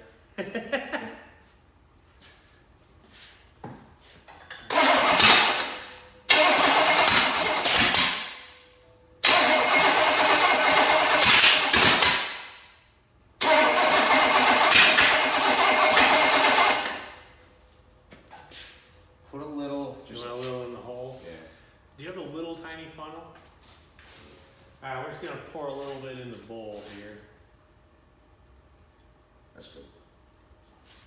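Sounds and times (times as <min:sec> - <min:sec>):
engine starter cranking: 0:04.6 - 0:08.6, 0:09.2 - 0:12.6, 0:13.4 - 0:17.2.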